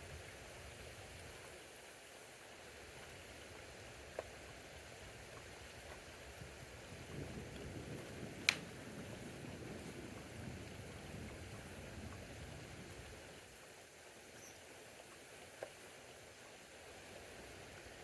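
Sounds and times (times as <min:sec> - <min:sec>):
steady rain falling: 0:00.0 - 0:18.0
low thunder rumble: 0:07.0 - 0:13.0.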